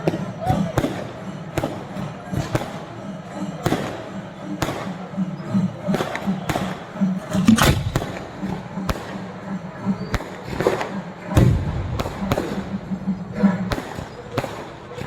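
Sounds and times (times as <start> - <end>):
fireworks banging: 0.0 - 2.9, 3.6 - 5.0, 5.9 - 15.0
low background din: 0.0 - 15.0.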